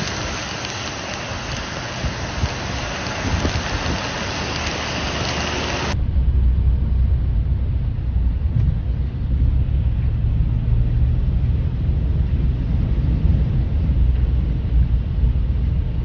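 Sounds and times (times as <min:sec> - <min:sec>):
heavy rain hissing: 0:00.0 - 0:06.0
loud deep rumble: 0:00.0 - 0:16.0.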